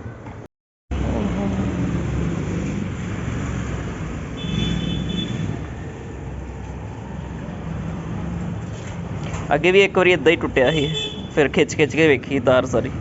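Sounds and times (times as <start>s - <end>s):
traffic noise: 0.0s - 13.0s
low engine hum: 0.9s - 4.4s.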